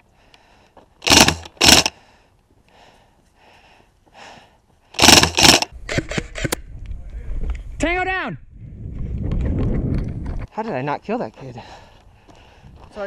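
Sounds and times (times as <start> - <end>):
airsoft gun shots: 1.0 - 1.9, 5.0 - 6.5
sharp clicks: 1.0 - 2.0, 5.0 - 6.6.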